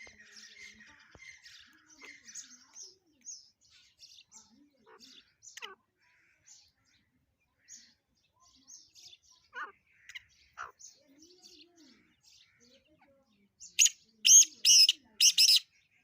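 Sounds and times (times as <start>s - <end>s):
bird chirps and harsh calls: 0.0s - 16.0s.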